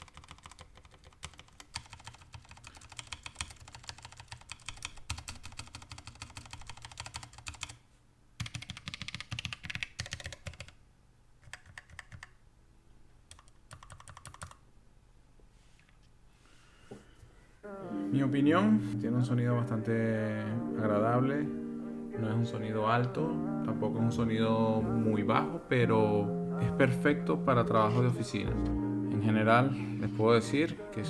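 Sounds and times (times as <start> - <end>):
mechanical keyboard typing: 0.0 - 7.8, 8.4 - 10.8, 11.4 - 12.4, 13.3 - 14.6.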